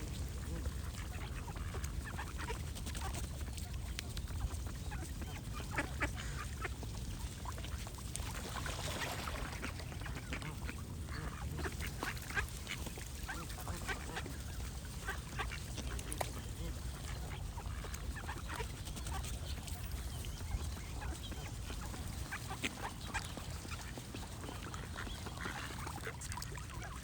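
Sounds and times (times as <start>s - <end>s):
ducks quacking: 0.0s - 27.0s
birds singing: 16.3s - 26.1s.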